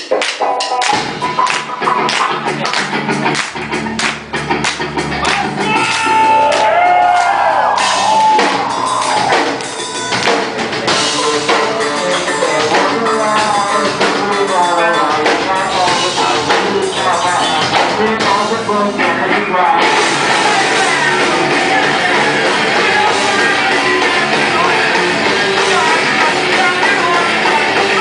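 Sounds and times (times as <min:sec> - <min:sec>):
drum kit: 0:00.0 - 0:28.0
rock band playing: 0:00.0 - 0:28.0
person singing: 0:07.8 - 0:28.0.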